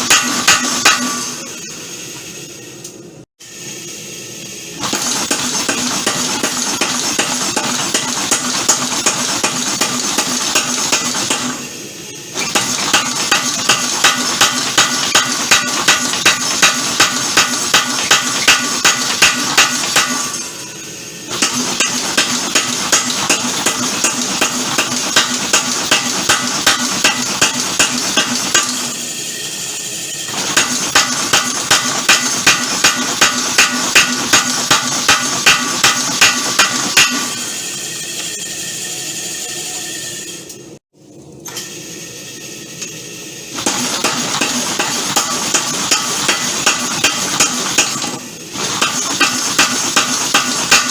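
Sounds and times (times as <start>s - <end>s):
power hammer striking steel: 0.0s - 1.7s, 4.8s - 11.7s, 12.4s - 20.7s, 21.3s - 29.0s, 30.3s - 37.6s, 43.6s - 50.9s
machine running noise: 0.0s - 50.9s.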